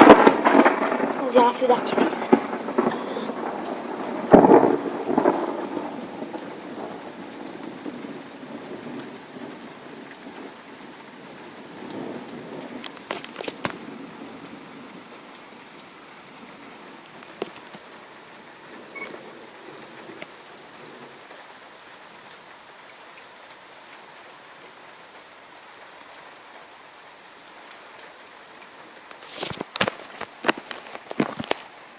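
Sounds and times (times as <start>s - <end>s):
thunder rumble: 0.0s - 15.1s
steady rain falling: 0.0s - 31.9s.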